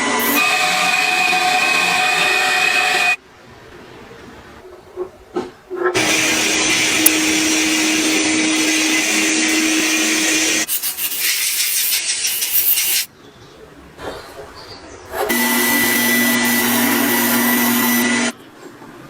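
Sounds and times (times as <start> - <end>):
power tool running: 0.0 - 3.2, 6.0 - 10.7, 15.3 - 18.4.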